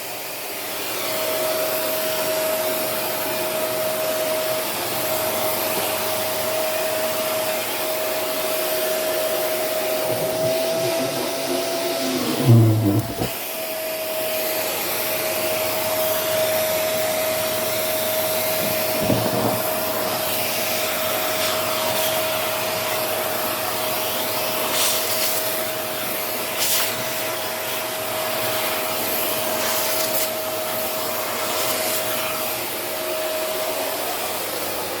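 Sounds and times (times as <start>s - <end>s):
vacuum cleaner whining: 0.0s - 35.0s
rushing suction noise: 9.8s - 13.4s.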